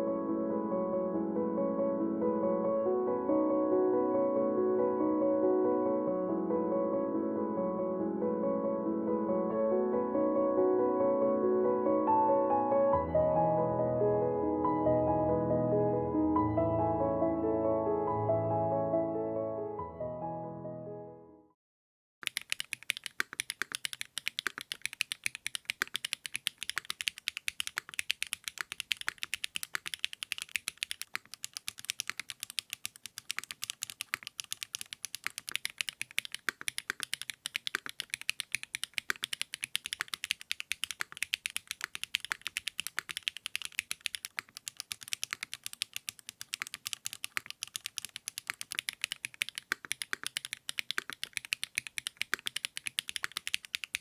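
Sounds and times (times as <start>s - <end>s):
mechanical keyboard typing: 22.2s - 54.0s.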